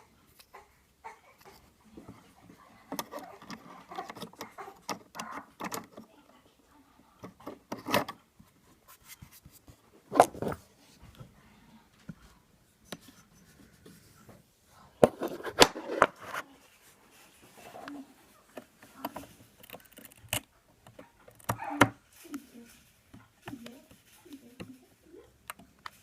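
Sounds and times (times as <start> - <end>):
clicks and scrapes of parts: 2.8 - 6.1, 7.2 - 8.2, 15.0 - 16.5, 17.6 - 24.8.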